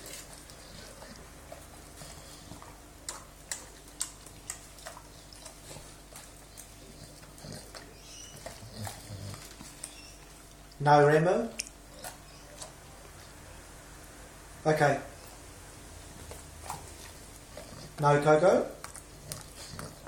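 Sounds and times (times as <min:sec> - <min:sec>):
dogs breathing noisily: 0:00.0 - 0:10.3, 0:19.0 - 0:20.0
dogs chewing and lip-smacking: 0:00.0 - 0:10.8, 0:11.4 - 0:13.5, 0:15.2 - 0:20.0.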